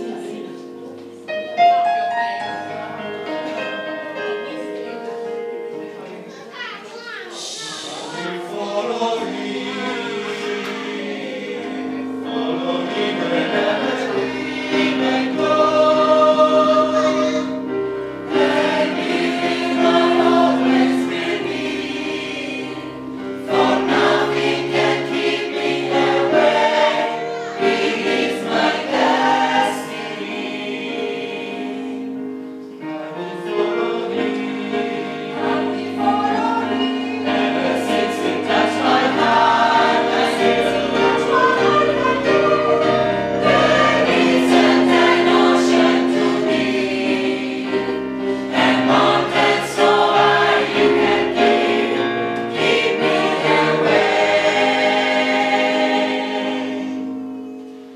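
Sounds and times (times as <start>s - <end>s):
gospel choir singing: 0.0s - 6.0s, 7.3s - 57.9s.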